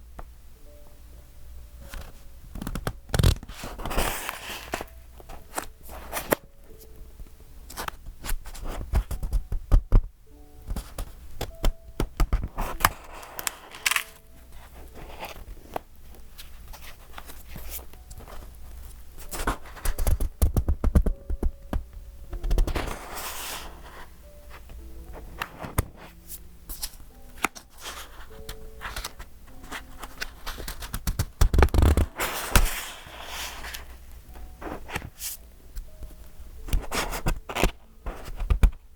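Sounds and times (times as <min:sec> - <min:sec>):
pages rustling: 0:01.8 - 0:06.5, 0:10.7 - 0:21.4, 0:22.3 - 0:35.4.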